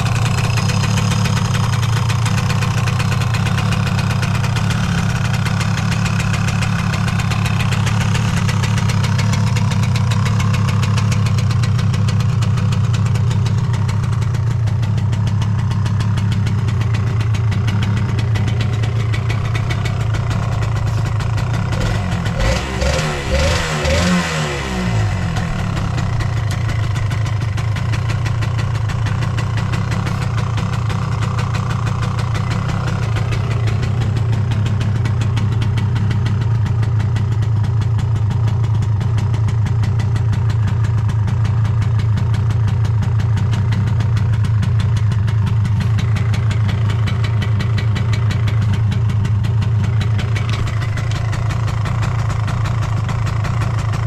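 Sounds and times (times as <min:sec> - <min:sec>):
two-stroke engine revving and idling: 0:00.0 - 0:54.0.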